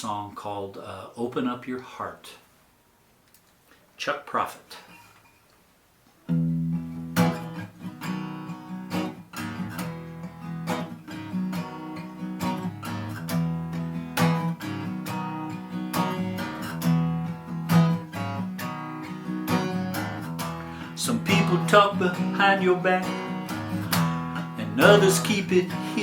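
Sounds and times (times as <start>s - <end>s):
acoustic guitar strumming: 6.3s - 26.0s.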